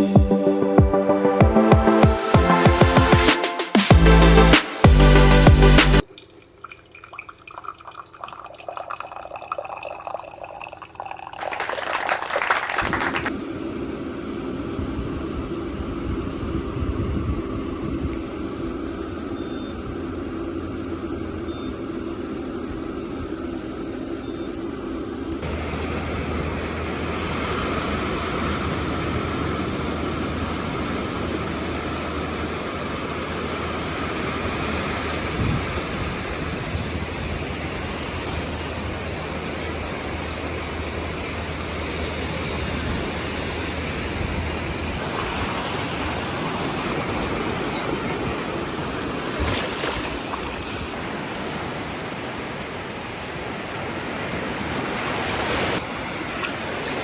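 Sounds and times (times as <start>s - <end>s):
wind: 0.0s - 57.0s
ocean surf: 11.4s - 13.4s, 25.4s - 57.0s
droning hum: 11.9s - 54.8s.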